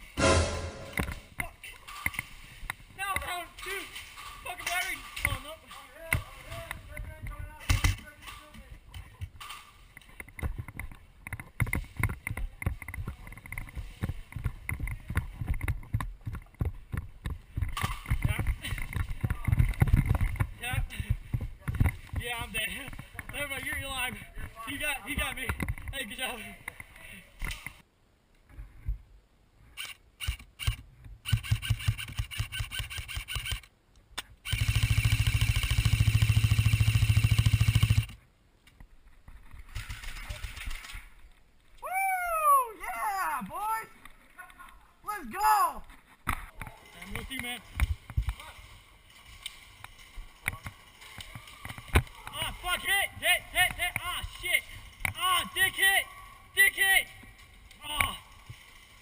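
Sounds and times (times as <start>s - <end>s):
gun motor rattle: 29.8s - 33.7s, 34.5s - 38.2s
airsoft guns firing: 34.5s - 38.1s.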